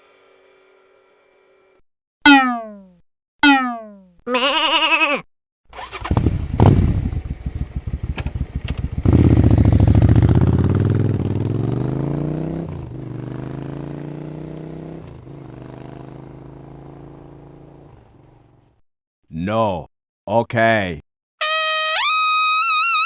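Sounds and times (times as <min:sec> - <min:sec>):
engine cranking and sputtering: 0:05.7 - 0:10.4
engine revving and idling: 0:05.8 - 0:18.5.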